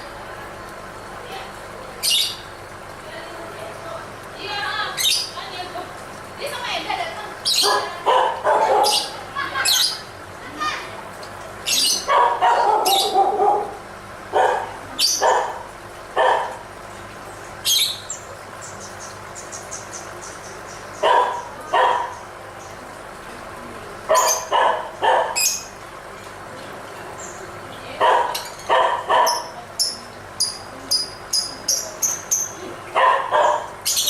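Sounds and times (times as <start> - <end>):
lovebirds harsh calls: 2.0 - 2.6, 4.8 - 5.6, 7.3 - 10.7, 11.6 - 13.8, 14.4 - 16.6, 17.3 - 23.0, 24.0 - 25.8, 27.2 - 34.0
lovebirds twittering: 2.0 - 2.8, 4.8 - 5.6, 7.3 - 10.1, 11.6 - 13.7, 14.4 - 15.5, 17.3 - 23.0, 24.1 - 25.8, 27.1 - 34.0.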